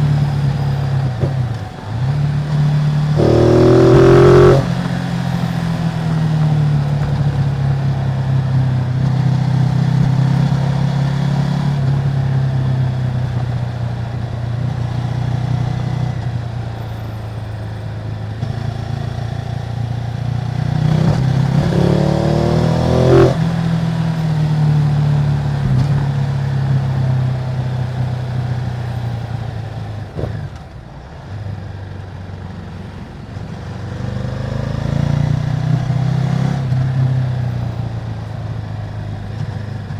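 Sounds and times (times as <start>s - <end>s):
motorcycle engine running: 0.0s - 31.0s.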